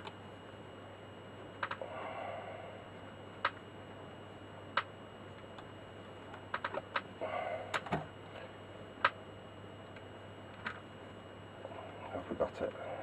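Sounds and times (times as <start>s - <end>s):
small clicks and taps: 1.6s - 1.8s, 6.5s - 7.1s.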